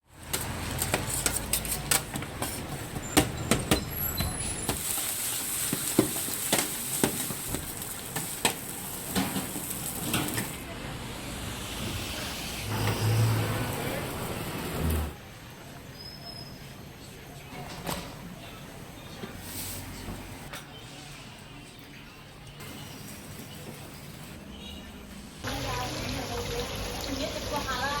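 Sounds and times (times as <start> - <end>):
street traffic rumble: 0.1 - 17.4
loud sizzle: 4.1 - 15.2, 25.4 - 28.0.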